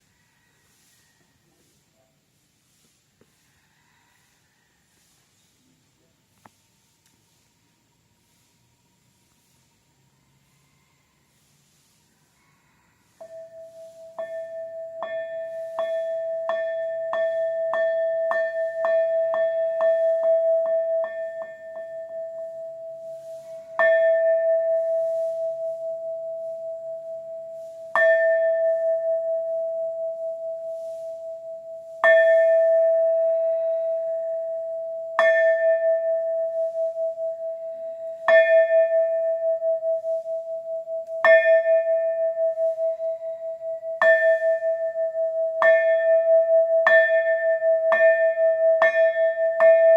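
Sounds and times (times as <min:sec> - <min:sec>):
monastery bell ringing: 0:13.2 - 0:49.9.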